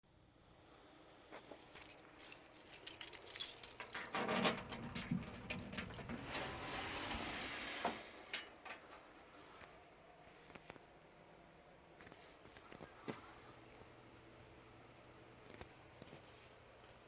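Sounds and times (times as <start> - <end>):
metallic jingling and clinking: 1.7 - 6.6, 8.2 - 8.9.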